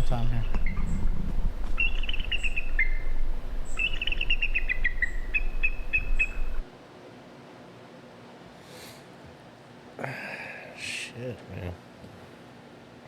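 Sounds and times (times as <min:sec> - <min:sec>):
high trilled chirping: 0:01.8 - 0:06.6.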